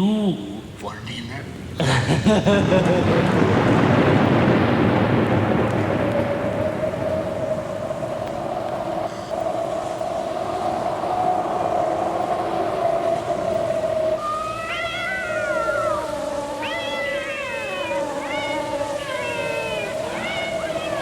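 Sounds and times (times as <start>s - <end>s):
cat yowling: 14.2s - 21.0s.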